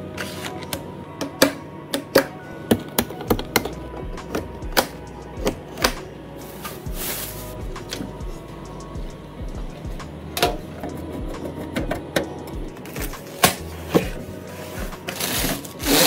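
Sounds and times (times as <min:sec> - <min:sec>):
background music: 0:00.0 - 0:16.0.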